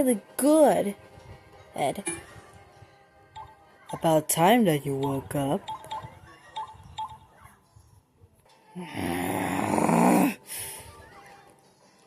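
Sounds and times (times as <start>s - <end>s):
person groaning: 8.8s - 10.4s.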